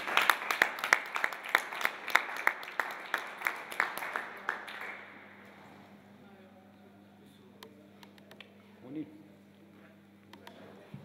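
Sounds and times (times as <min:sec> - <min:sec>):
audience applauding: 0:00.0 - 0:05.2.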